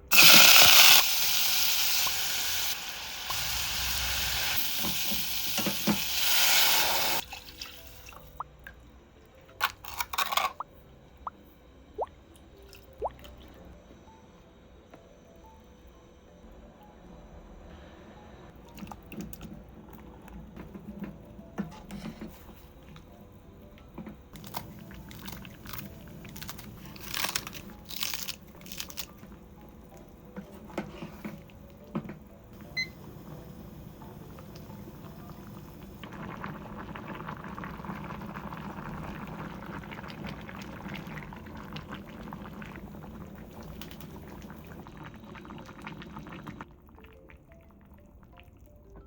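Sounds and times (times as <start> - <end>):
food hissing on stove: 0.1 - 7.2.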